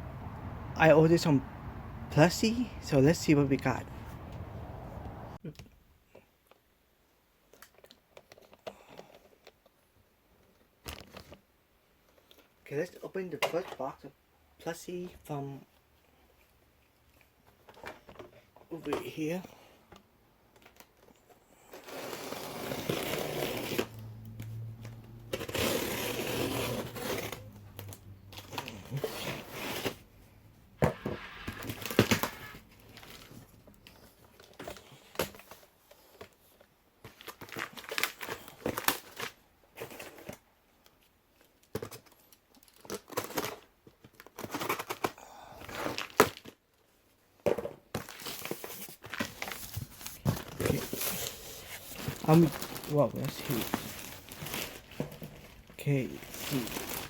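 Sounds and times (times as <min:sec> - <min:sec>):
packaging tearing and crinkling: 0:21.7 - 0:24.0, 0:37.1 - 0:40.4, 0:41.5 - 0:46.6, 0:48.0 - 0:57.0.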